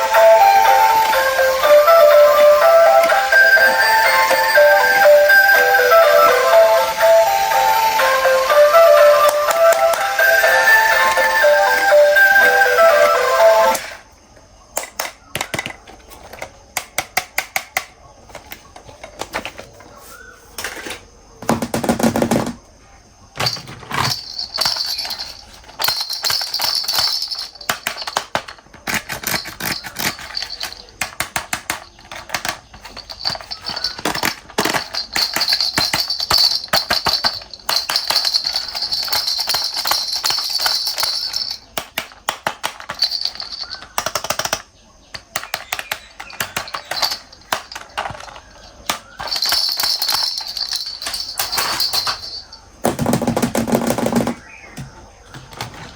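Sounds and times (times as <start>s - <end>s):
plastic toys clicking and knocking: 0.0s - 20.0s, 20.6s - 22.7s, 23.3s - 55.9s.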